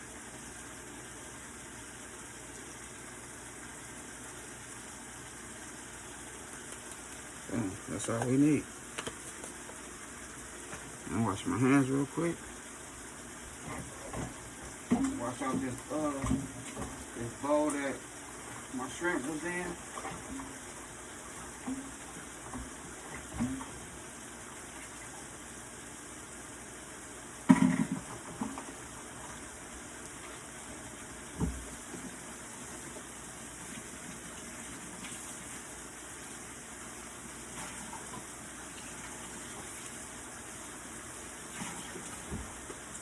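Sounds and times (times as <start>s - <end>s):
kitchen tap running: 4.0s - 43.0s
bowl rinsed at sink: 6.4s - 25.8s, 27.3s - 43.0s.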